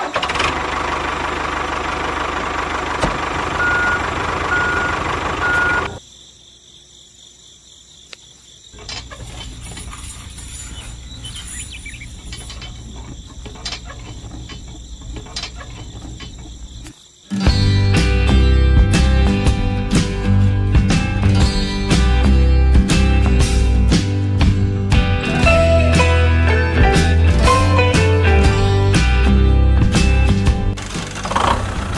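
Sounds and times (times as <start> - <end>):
engine running steadily: 0.0 - 6.0, 28.5 - 31.9
short beeps: 3.6 - 6.0.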